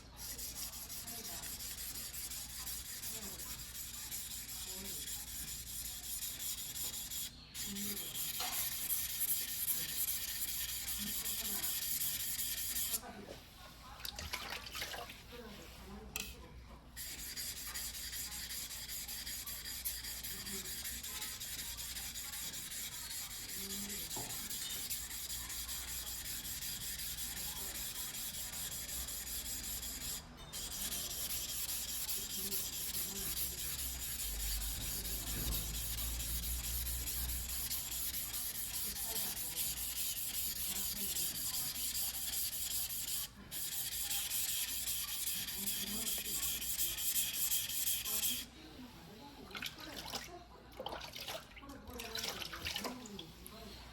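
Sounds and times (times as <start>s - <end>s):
knife scraping on whetstone: 17.0s - 48.4s.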